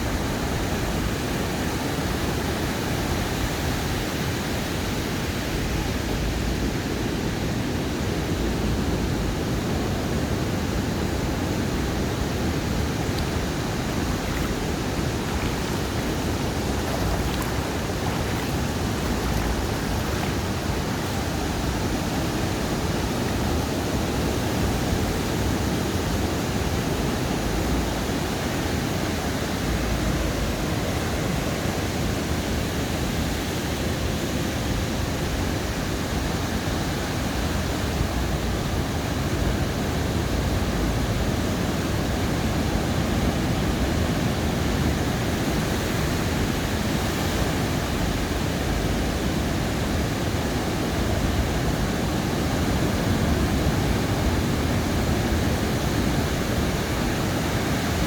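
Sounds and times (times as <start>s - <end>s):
ocean surf breaking: 11.8s - 25.1s.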